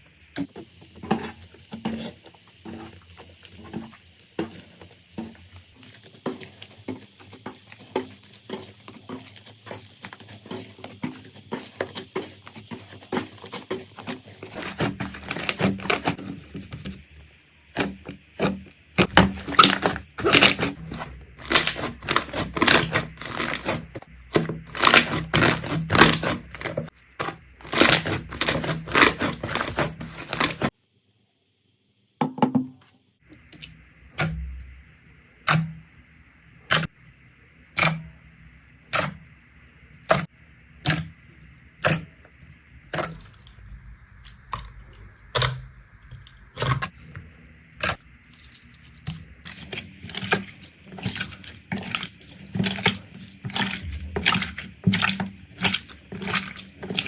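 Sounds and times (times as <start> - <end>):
slime crackling and popping: 21.4 - 23.7.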